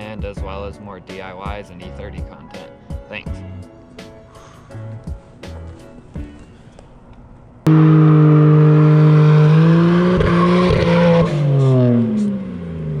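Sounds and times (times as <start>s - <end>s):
car engine at high revs: 7.7s - 13.0s.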